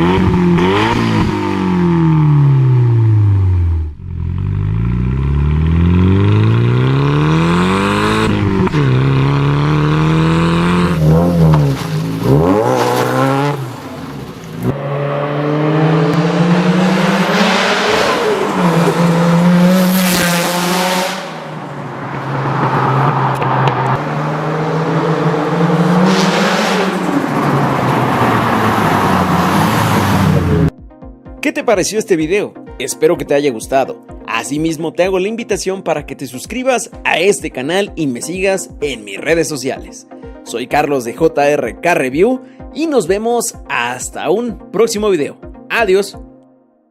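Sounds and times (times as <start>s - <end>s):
car engine revving: 0.0s - 30.7s.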